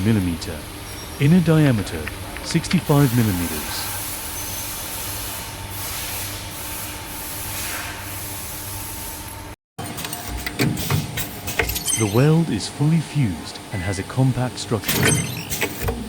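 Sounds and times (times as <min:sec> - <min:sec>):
machine hissing and humming: 0:00.0 - 0:09.4
mechanical clicks and knocks: 0:14.8 - 0:16.0.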